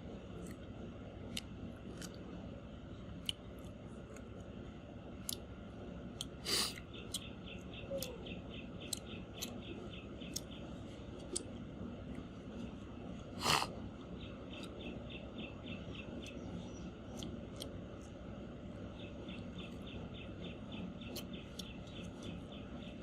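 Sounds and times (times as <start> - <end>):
person chewing and crunching: 1.3 - 2.3, 3.2 - 4.4.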